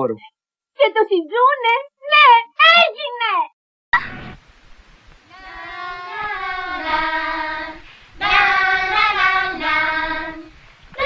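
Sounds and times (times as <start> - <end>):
high young voices singing: 5.2 - 11.0.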